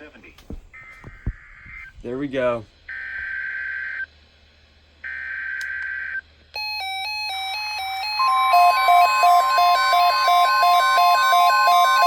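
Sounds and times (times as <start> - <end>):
steady warning alarm tone: 5.1 - 12.0
fast electronic beeping melody: 6.6 - 12.0.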